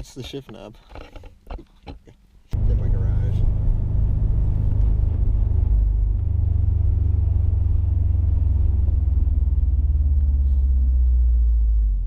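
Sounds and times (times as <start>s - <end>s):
car engine rumbling: 2.5s - 12.0s
higher hum: 2.6s - 11.0s.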